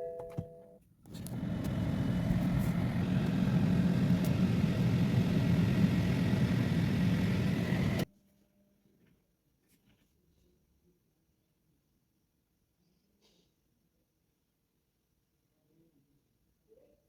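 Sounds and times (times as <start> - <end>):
car engine running: 1.1 - 8.1.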